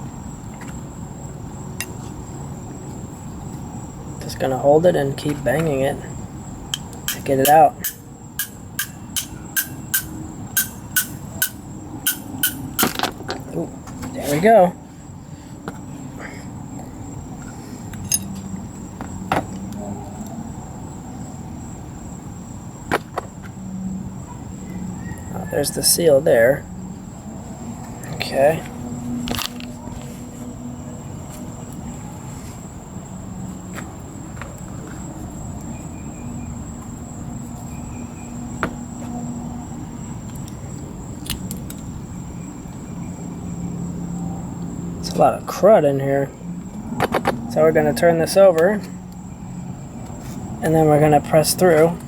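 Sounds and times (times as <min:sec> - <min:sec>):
steady background hum: 0:00.0 - 0:52.0
sharp metallic clicks of parts: 0:06.7 - 0:13.4.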